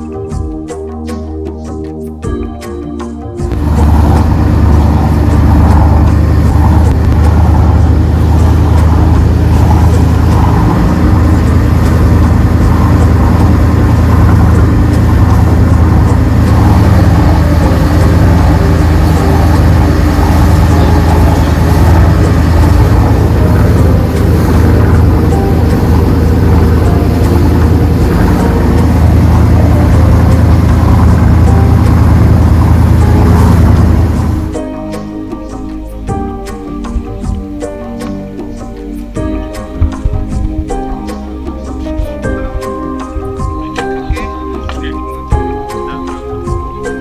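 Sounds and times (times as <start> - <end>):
boat engine droning: 3.5 - 34.7.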